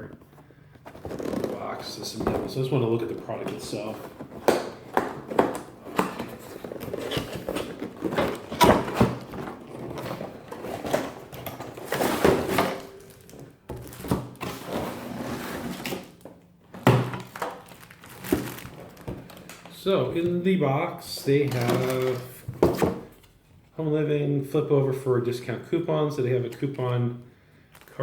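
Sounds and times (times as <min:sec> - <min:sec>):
cardboard scraping and rustling: 0:00.8 - 0:19.5, 0:21.2 - 0:23.4.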